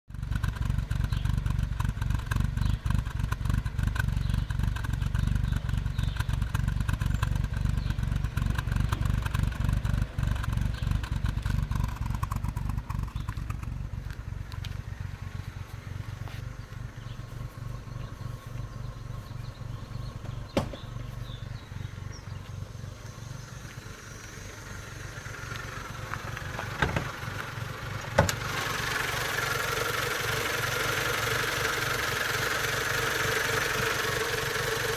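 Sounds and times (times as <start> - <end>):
car engine rough idle: 0.1 - 34.9
sharp clicks: 8.4 - 13.8.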